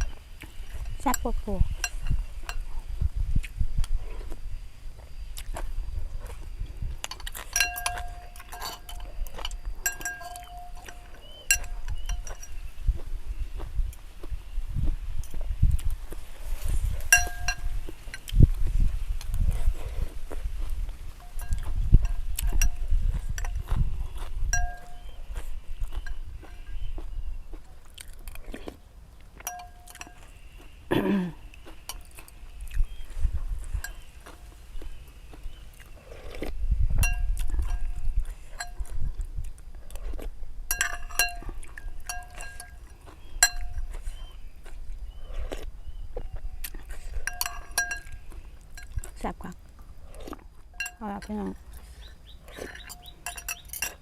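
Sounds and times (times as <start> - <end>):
utensils clinking against a bowl: 0.0 - 2.8, 7.0 - 12.8, 17.0 - 18.4, 21.2 - 26.9, 29.4 - 30.6, 33.7 - 34.4, 37.0 - 39.0, 40.7 - 44.2, 46.9 - 49.5, 50.7 - 54.0
person chewing: 0.0 - 54.0.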